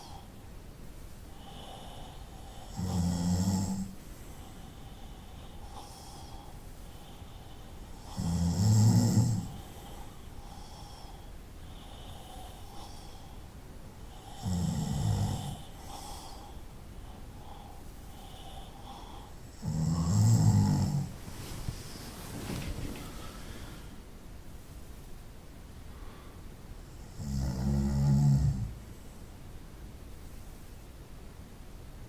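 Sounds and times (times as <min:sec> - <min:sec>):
person snoring: 0:01.4 - 0:04.0, 0:07.9 - 0:11.1, 0:14.1 - 0:16.6, 0:18.2 - 0:21.2, 0:27.0 - 0:28.8.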